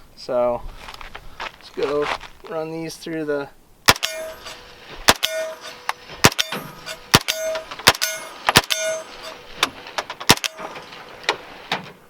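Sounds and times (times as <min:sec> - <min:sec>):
gunshots: 0:03.9 - 0:09.4, 0:10.3 - 0:10.8
steel target ringing: 0:03.9 - 0:09.5, 0:10.3 - 0:10.9.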